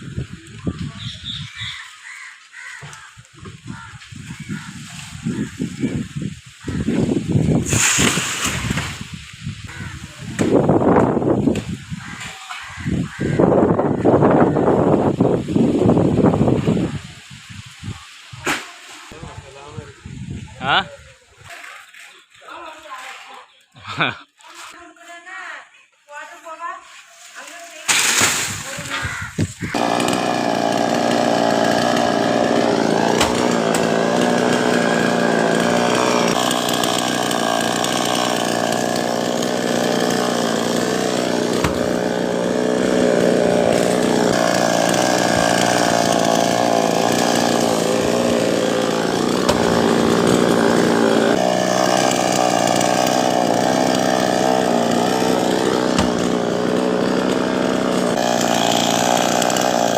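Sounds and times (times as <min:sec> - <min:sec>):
chainsaw cutting wood: 0:07.5 - 0:12.2, 0:27.9 - 0:59.9.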